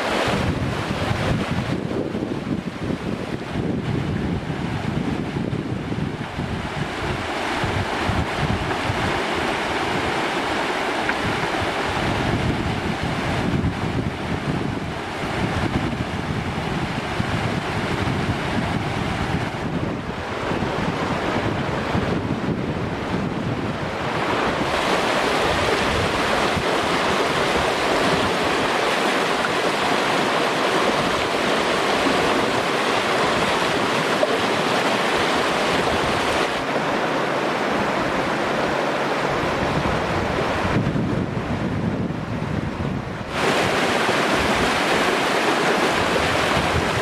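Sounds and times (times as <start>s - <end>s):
river water rushing: 0.0s - 47.0s
wind buffeting microphone: 0.0s - 47.0s.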